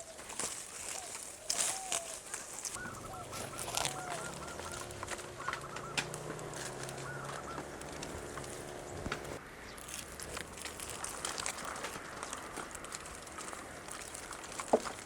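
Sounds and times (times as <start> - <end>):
bird calls: 0.0 - 10.0
steady droning hum: 2.8 - 9.8.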